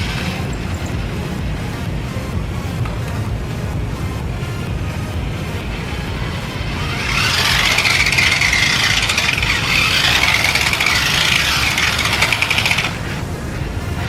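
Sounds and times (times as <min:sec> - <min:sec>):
toy car electric motor whine: 0:00.0 - 0:01.0, 0:05.4 - 0:14.0.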